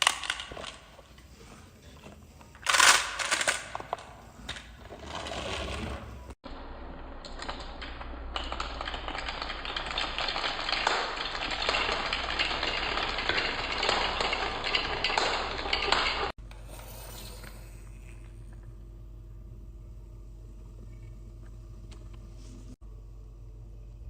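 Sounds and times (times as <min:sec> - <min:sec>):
marbles clattering down wooden track: 0:07.2 - 0:16.3
low steady hum: 0:15.2 - 0:24.0.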